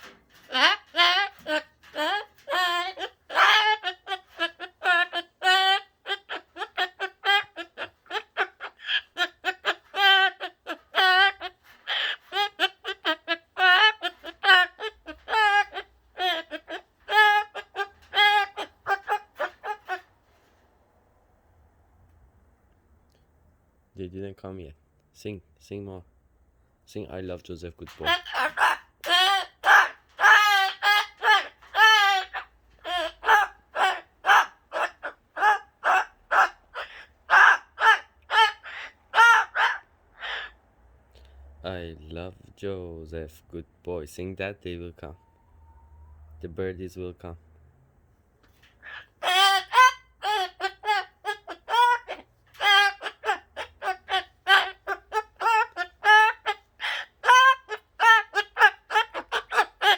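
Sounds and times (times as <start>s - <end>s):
cockatoo singing: 0.0s - 20.2s, 27.8s - 40.6s, 48.4s - 59.9s.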